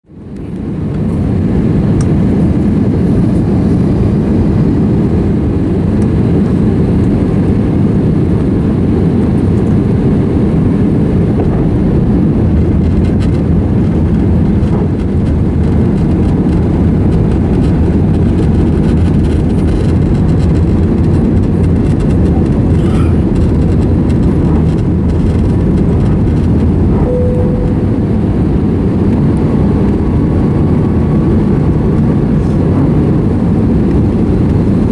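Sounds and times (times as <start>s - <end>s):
aircraft cabin engine rumble: 0.1s - 34.9s
short faint tone: 26.9s - 28.3s.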